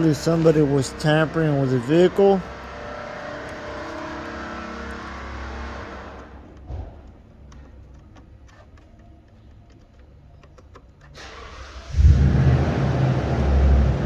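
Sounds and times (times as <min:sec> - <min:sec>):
engine rumble: 0:00.0 - 0:07.5, 0:11.2 - 0:14.0
clicks and taps on plastic fuses: 0:05.8 - 0:11.2.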